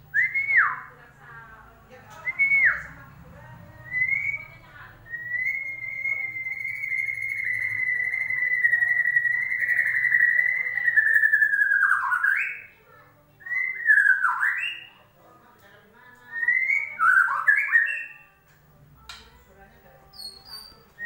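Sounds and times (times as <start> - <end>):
bird whistling song: 0.1 - 0.9, 3.8 - 12.7, 13.4 - 14.9, 16.3 - 18.3, 20.1 - 21.0.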